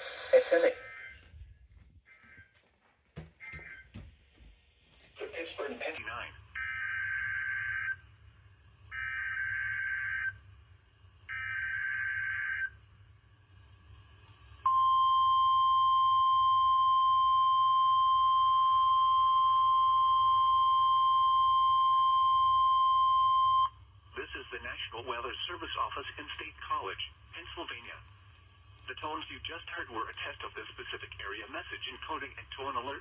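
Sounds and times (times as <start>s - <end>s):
steady warning alarm tone: 0.0s - 4.5s, 8.9s - 10.5s, 11.3s - 12.9s, 14.7s - 23.8s.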